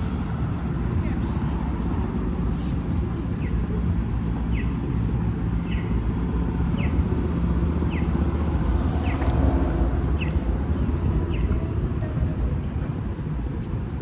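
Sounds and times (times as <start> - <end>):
street traffic rumbling: 0.0 - 14.0.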